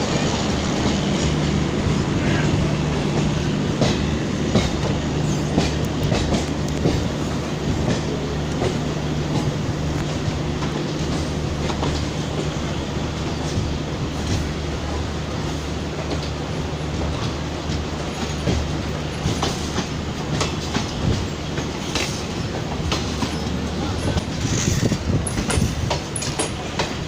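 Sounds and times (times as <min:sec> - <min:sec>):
train rumbling on rails: 0:00.0 - 0:27.0
wheels clicking over rail joints: 0:03.2 - 0:07.2, 0:16.0 - 0:27.0.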